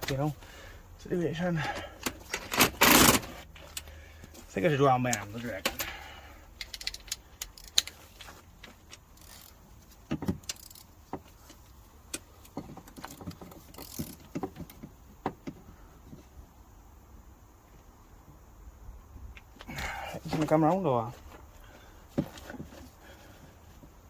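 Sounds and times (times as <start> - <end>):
metallic clicks of hand tools: 6.5 - 8.0, 10.2 - 10.9.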